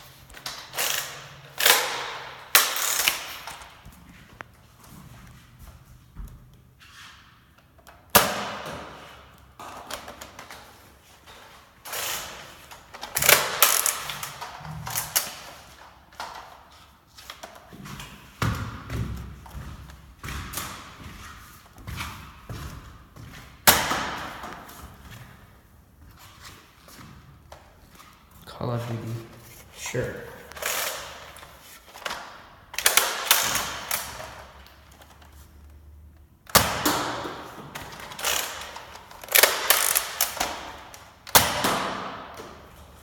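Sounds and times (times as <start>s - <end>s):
toy blaster clicks and thumps: 0.4s - 3.7s, 11.9s - 15.4s, 37.8s - 41.8s.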